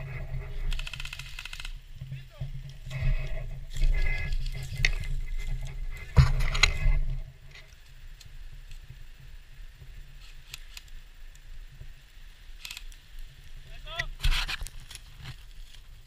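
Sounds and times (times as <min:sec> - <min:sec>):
microphone rumble: 0:00.0 - 0:01.2, 0:01.8 - 0:07.8
gear rustling and scraping: 0:00.0 - 0:09.0, 0:14.2 - 0:16.0.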